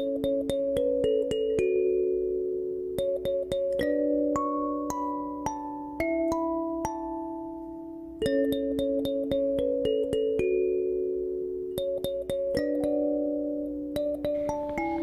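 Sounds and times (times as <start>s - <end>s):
soft keyboard chords: 13.6s - 15.0s
melody of short separate notes: 14.2s - 15.0s.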